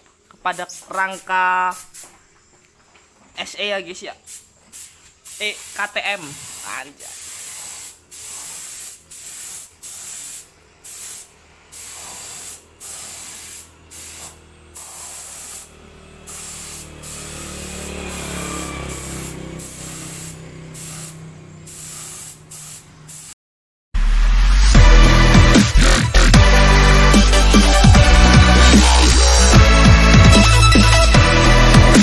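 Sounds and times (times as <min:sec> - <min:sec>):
spray paint hissing: 0:00.5 - 0:02.2, 0:04.2 - 0:23.4.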